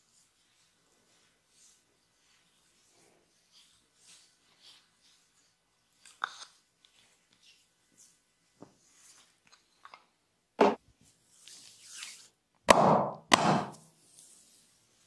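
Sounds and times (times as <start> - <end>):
hands brushing rub: 0.0 - 6.2
loud sharp hits on body: 12.7 - 13.8.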